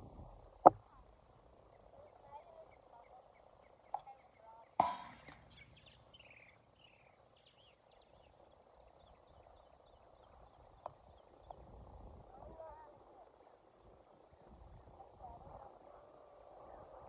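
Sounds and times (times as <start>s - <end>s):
birds chirping: 1.6s - 11.6s
sharp crack: 4.8s - 5.6s.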